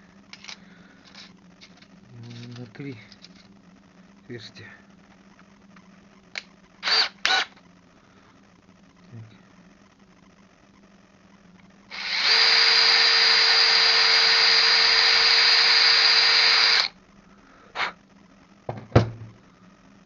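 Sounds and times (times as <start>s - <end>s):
small electric drill running: 6.8s - 7.6s, 11.9s - 17.0s.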